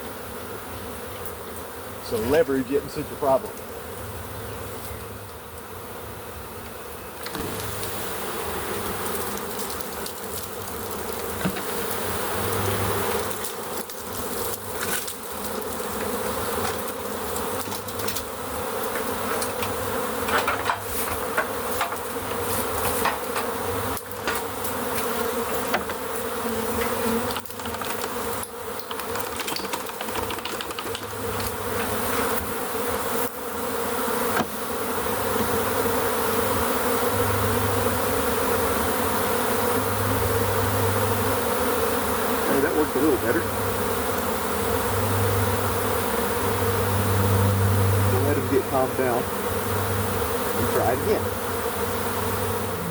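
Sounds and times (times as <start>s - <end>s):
bee swarm buzzing: 0.0s - 52.9s.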